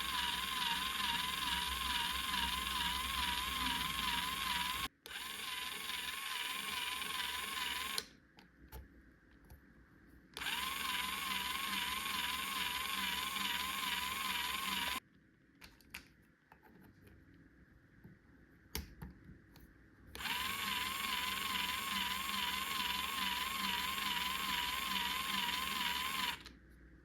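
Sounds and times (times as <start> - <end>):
toy drill buzzing whir: 0.0 - 8.1, 10.4 - 15.0, 20.2 - 26.5.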